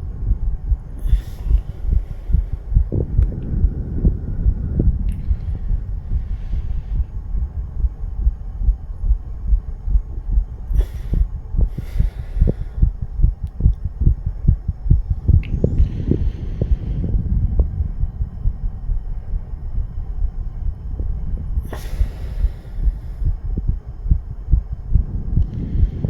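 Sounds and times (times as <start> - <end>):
fast heartbeat thumps: 0.0 - 26.0.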